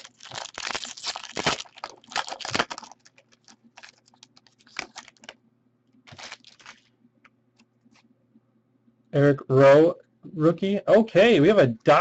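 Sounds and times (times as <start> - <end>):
trading cards rustling: 0.0 - 5.4, 6.1 - 6.9.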